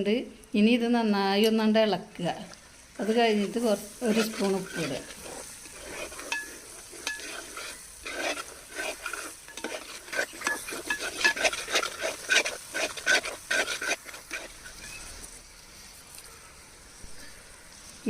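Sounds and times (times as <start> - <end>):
faint sizzle: 0.0 - 18.0
spoon scraping a pan: 3.0 - 15.4.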